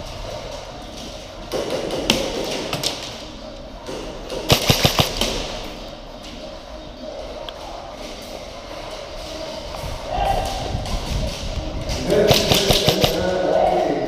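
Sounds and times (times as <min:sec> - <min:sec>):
airsoft guns firing: 0:04.3 - 0:05.8, 0:12.1 - 0:13.4.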